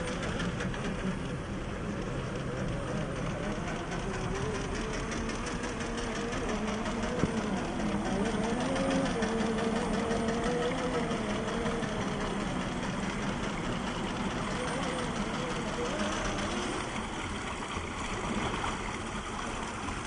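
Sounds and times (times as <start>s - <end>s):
electric motor and gears whining: 2.6s - 17.0s.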